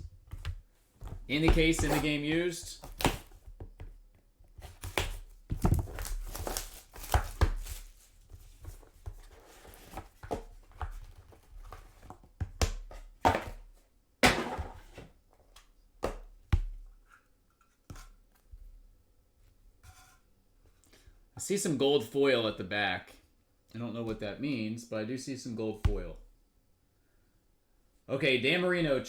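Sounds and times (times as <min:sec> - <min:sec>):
wrapping crinkling and tearing: 0:05.8 - 0:08.2.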